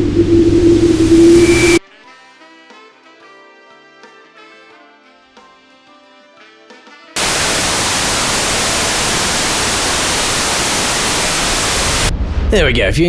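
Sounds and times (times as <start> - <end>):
white-noise static: 0.0 - 1.8, 7.2 - 12.1.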